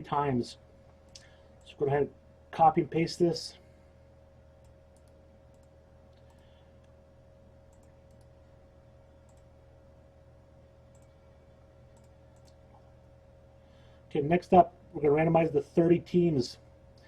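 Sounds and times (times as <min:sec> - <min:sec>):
faint electrical hum: 0:00.0 - 0:17.0
computer mouse clicks: 0:04.6 - 0:07.0, 0:07.7 - 0:08.4, 0:09.3 - 0:09.5, 0:10.9 - 0:11.2, 0:11.9 - 0:12.6.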